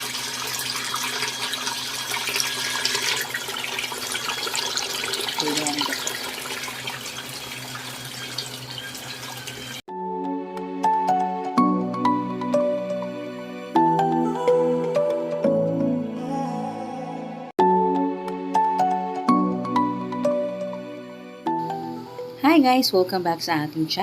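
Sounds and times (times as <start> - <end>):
water churning and splashing: 0.0 - 9.8
music: 9.9 - 24.0.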